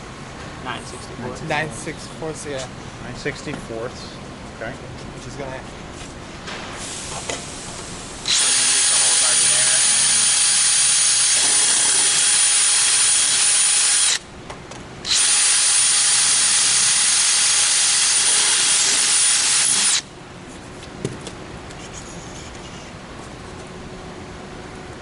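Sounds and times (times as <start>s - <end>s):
power drill running: 8.2s - 14.2s, 15.0s - 20.1s.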